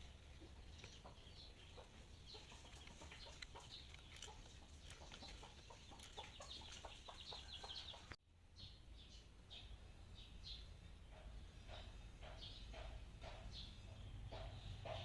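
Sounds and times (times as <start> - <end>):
faint chicken calls: 0.1 - 8.2
small clicks: 2.8 - 6.3.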